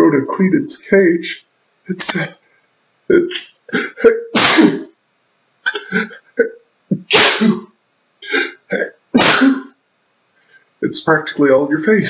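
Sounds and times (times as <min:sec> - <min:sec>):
man sneezing: 0:02.0 - 0:02.3, 0:03.1 - 0:04.9, 0:05.7 - 0:09.7.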